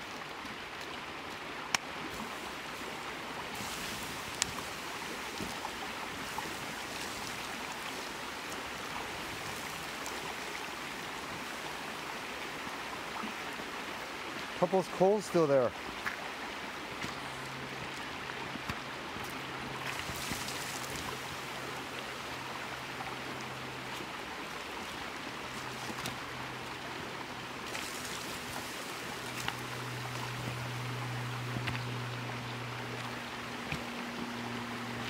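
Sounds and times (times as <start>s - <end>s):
campfire coals crackling: 0.0s - 12.7s, 13.6s - 35.0s
creek water running: 0.0s - 35.0s
low steady hum: 15.7s - 35.0s.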